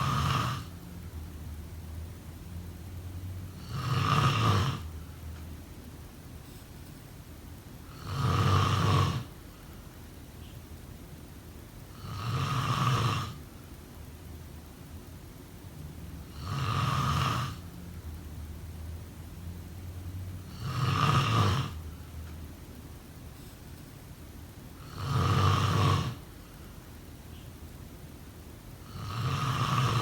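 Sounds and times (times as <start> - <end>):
person snoring loudly: 0.0 - 0.8, 3.5 - 4.9, 7.9 - 9.4, 11.9 - 13.4, 16.3 - 17.7, 20.4 - 21.9, 24.8 - 26.3, 28.8 - 30.0
quiet breathing: 0.0 - 0.9, 7.8 - 10.7, 24.8 - 27.5.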